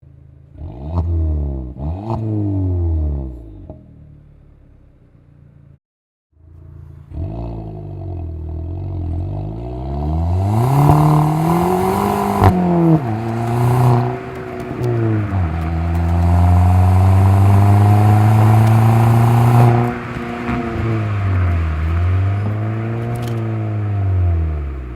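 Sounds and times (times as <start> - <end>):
car engine revving: 0.2 - 5.8, 6.4 - 24.9
exhaust crack: 6.4 - 24.9.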